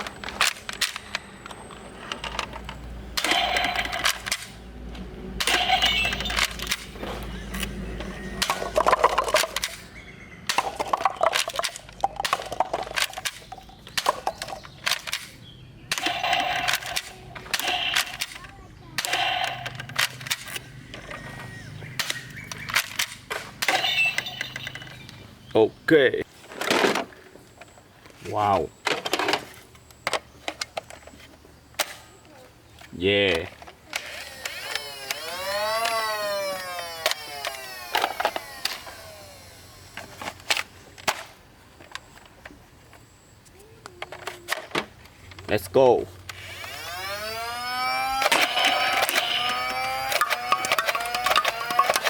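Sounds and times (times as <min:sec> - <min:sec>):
toy gun shots: 0:00.0 - 0:01.3, 0:03.1 - 0:04.6, 0:05.4 - 0:25.0, 0:33.9 - 0:41.3, 0:46.3 - 0:52.0
plastic toy clicks and taps: 0:48.2 - 0:52.0.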